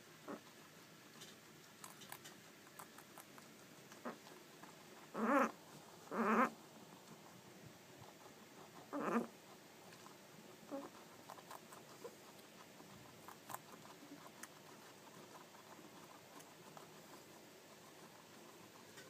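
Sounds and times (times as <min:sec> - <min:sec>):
faint clicks and ticks: 0:01.1 - 0:05.1, 0:10.8 - 0:19.0
short pitched animal call: 0:08.9 - 0:09.3.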